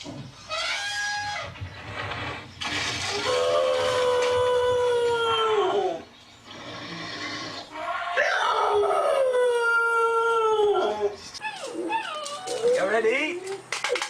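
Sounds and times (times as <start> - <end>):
dog howling: 3.1 - 6.0, 7.8 - 12.9.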